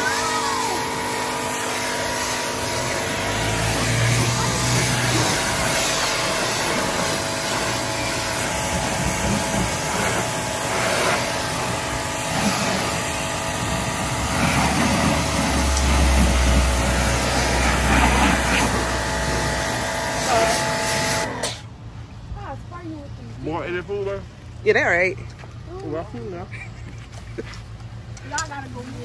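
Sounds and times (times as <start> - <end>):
pressure washer running: 0.0 - 21.7.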